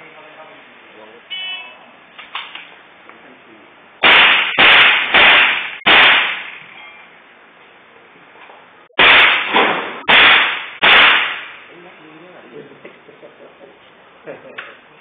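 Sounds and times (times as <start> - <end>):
rifle shots: 4.0 - 6.6, 9.0 - 11.6.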